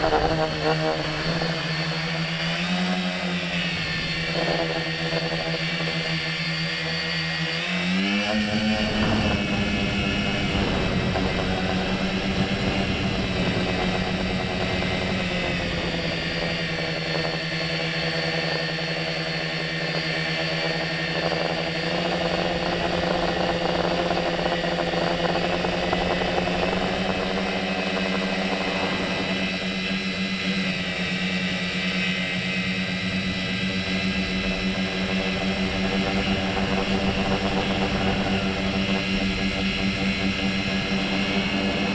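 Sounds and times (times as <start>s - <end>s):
drone propellers buzzing whine: 0.0s - 41.9s.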